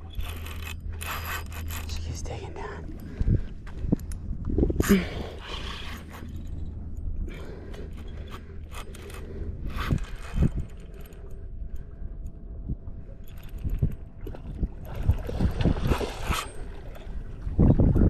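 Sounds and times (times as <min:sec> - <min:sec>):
fishing reel cranking and ratcheting: 0:00.0 - 0:02.0, 0:07.3 - 0:11.8, 0:16.2 - 0:16.7
gear scrapes and knocks: 0:00.0 - 0:02.2, 0:05.6 - 0:11.3
wind rumble on microphone: 0:00.0 - 0:18.0.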